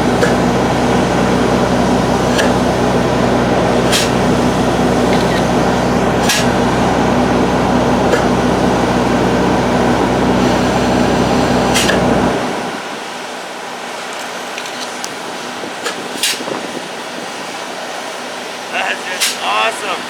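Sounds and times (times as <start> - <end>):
engine-driven equipment humming: 0.0 - 20.0
noisy wash hiss: 10.4 - 20.0.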